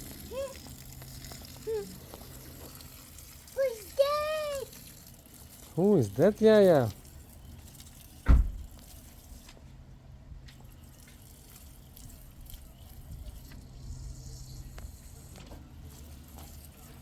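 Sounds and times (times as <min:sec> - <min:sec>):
faint water dripping and trickling: 0:00.0 - 0:09.7, 0:10.4 - 0:17.0
sharp thump: 0:08.3 - 0:08.7.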